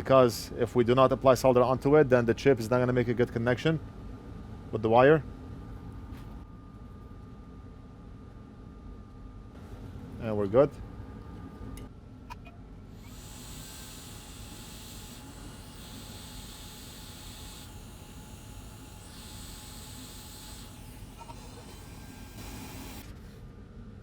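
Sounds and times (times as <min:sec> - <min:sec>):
hot air station hissing: 0:13.0 - 0:23.0.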